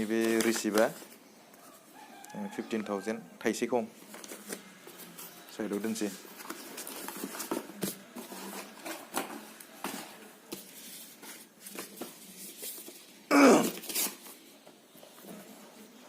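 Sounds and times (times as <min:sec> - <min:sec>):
packaging clicks and rustles: 0:00.0 - 0:01.2, 0:04.0 - 0:13.1.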